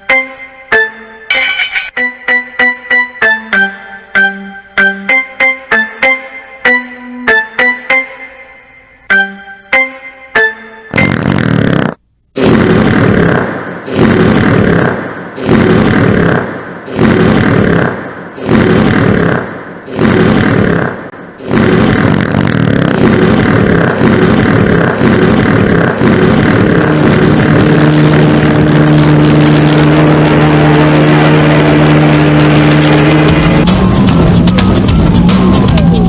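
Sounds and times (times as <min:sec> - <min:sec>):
cartoon stomach growling: 0:10.9 - 0:36.0
steady low hum: 0:12.0 - 0:36.0.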